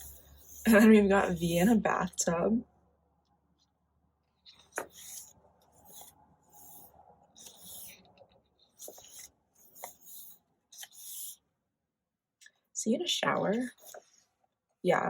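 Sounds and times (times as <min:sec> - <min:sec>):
paper pages turning: 0:04.4 - 0:11.4.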